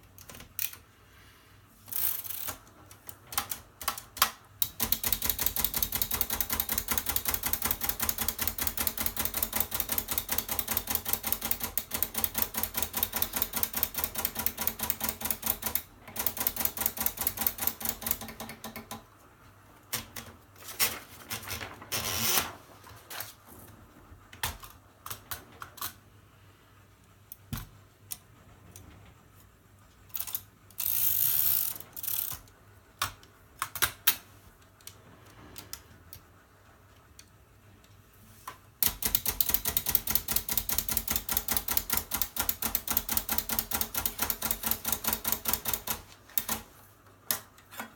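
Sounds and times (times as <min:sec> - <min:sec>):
typewriter keystrokes: 0:02.0 - 0:19.0, 0:38.8 - 0:46.7.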